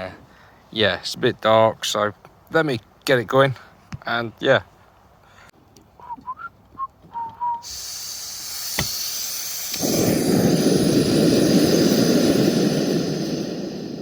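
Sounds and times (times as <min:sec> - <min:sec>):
burner flame rushing: 0:07.6 - 0:14.0
gas hissing from burner: 0:07.6 - 0:14.0.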